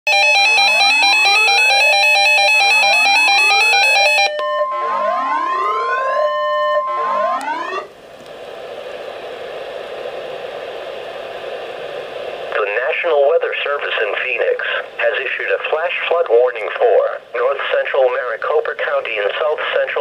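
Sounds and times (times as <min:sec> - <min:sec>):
synthesized siren sweep: 0:00.1 - 0:07.9
steady warning tone: 0:00.1 - 0:08.0
radio static hiss: 0:07.5 - 0:20.0.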